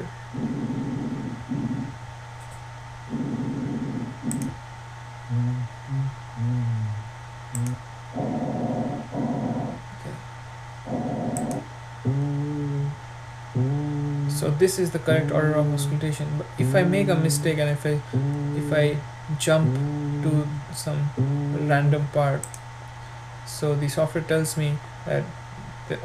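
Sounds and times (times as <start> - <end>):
mouse click: 4.3 - 4.5, 7.5 - 7.8
recorded breathing sounds: 5.3 - 10.2, 10.9 - 15.8, 18.0 - 22.0.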